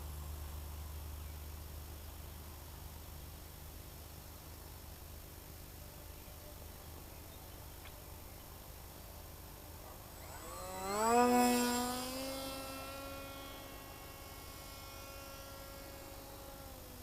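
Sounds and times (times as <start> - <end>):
model plane motor spooling up: 10.0 - 17.0.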